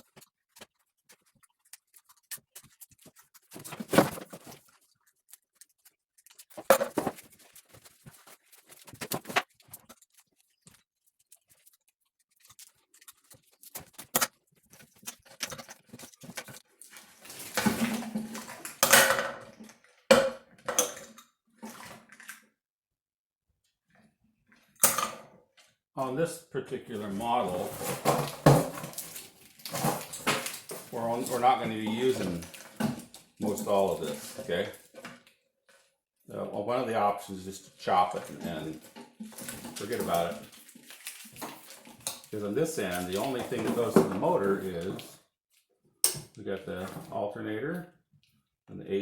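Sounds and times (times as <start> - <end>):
wires and connectors rustling: 0.0 - 18.9, 26.9 - 35.9, 37.7 - 45.2.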